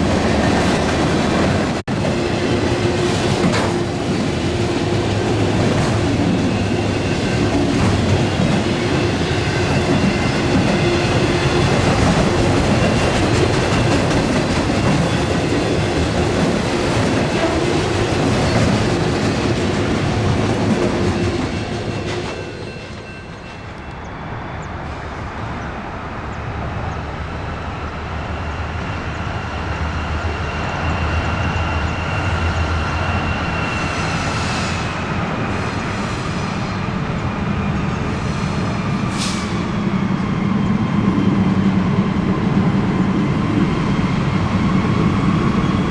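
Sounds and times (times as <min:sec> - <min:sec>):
train wheels clattering on track: 0:00.0 - 0:24.1
train rumble: 0:00.0 - 0:45.9.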